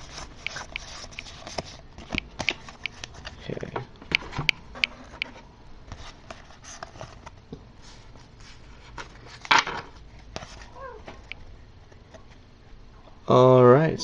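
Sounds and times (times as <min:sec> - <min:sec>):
cards tapping and shuffling: 0:00.0 - 0:07.3.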